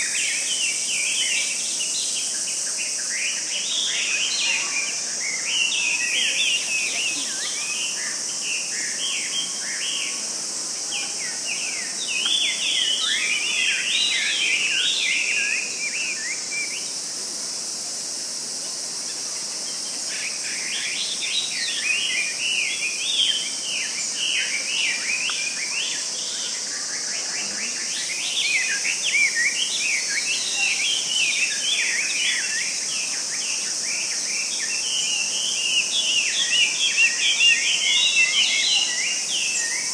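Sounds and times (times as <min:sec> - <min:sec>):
high-pitched insect drone: 0:20.0 - 0:39.9.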